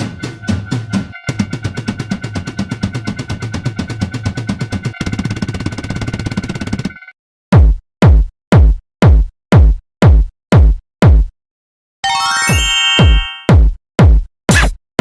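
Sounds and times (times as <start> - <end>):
drum machine kick drum: 7.5 - 11.3, 13.0 - 14.8
bright synth chord: 12.0 - 13.5.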